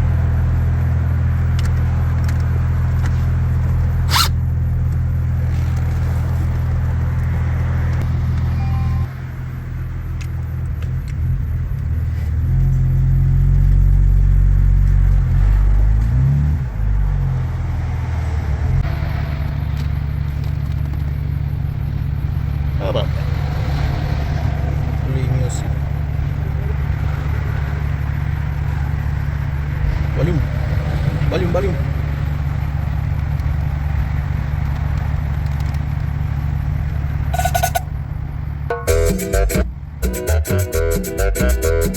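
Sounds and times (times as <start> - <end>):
car engine idling: 0.0 - 15.2, 19.4 - 23.5, 24.6 - 41.9
short pitched tone: 8.5 - 9.2, 37.3 - 38.0, 38.7 - 41.9.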